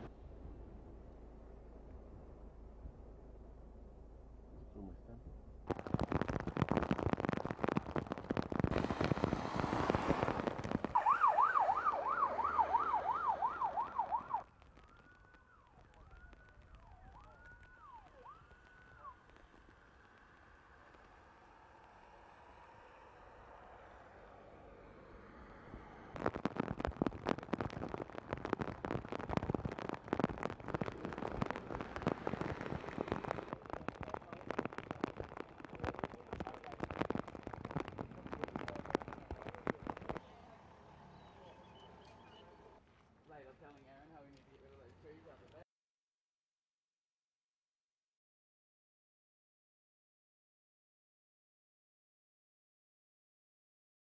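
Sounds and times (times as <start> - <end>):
dense crackling noise: 0.0 - 45.7
heavy rain on hard surface: 5.7 - 11.5, 25.4 - 42.4
siren fast yelp: 11.0 - 19.2
fainter slower siren wail: 11.0 - 20.0.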